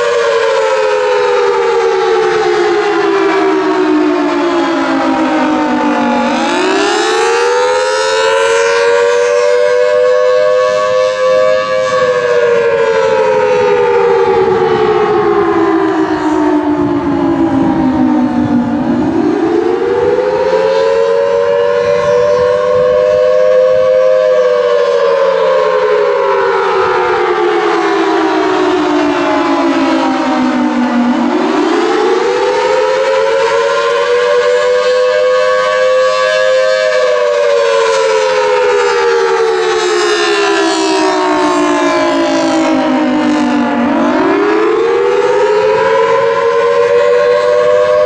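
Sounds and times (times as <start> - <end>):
dual-tone warning siren: 0.0 - 48.0.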